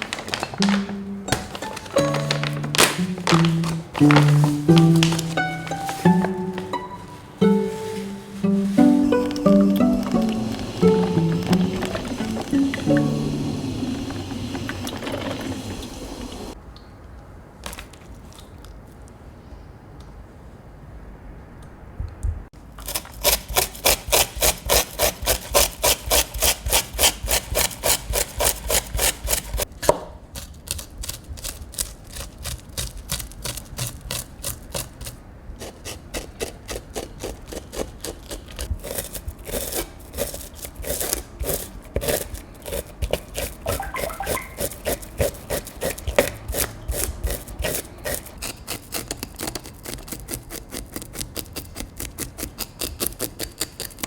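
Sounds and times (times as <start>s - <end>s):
knife scraping fish scales: 30.4s - 43.8s.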